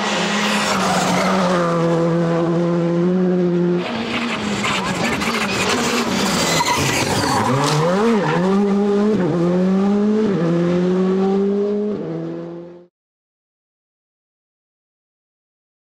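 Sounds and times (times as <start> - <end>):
car engine accelerating through gears: 1.4 - 12.9.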